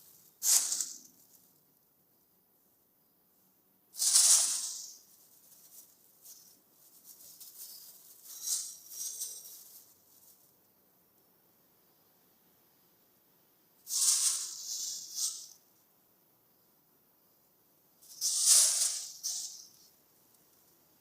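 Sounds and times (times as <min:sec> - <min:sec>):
plastic crinkling and rustling: 0:04.0 - 0:10.6.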